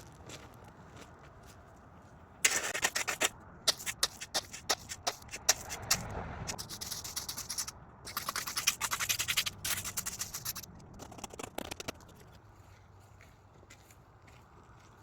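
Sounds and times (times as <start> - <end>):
scratchy scraping on gravel: 0.0 - 1.6, 2.4 - 12.5.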